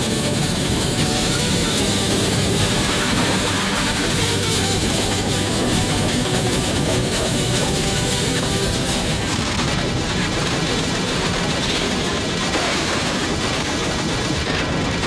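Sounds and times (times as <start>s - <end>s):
instrumental country music: 0.0s - 9.4s.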